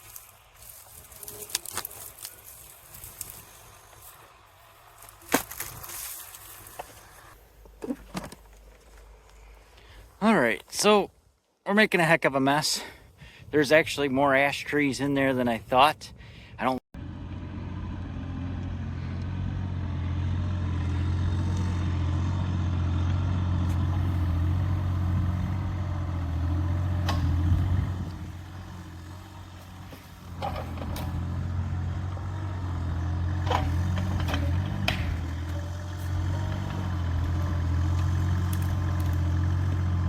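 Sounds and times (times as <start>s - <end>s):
sharp knocks and cracks: 5.2s - 6.9s, 26.2s - 28.0s, 32.8s - 39.8s
excavator diesel engine running: 17.0s - 40.0s.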